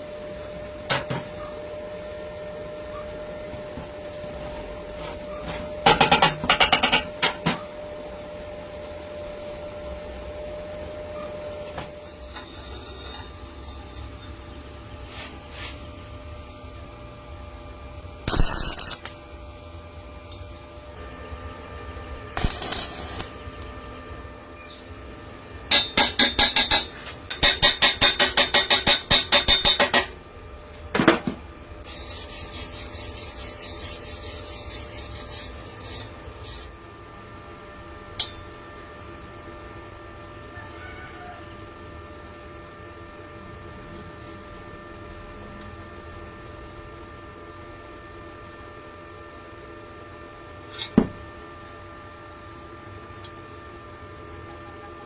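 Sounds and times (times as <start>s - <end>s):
steady hum: 0.0s - 40.5s.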